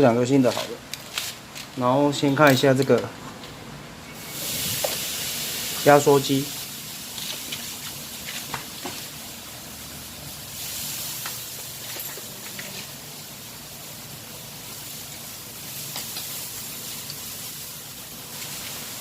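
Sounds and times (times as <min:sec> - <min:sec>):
steady background hiss: 0:00.0 - 0:19.0.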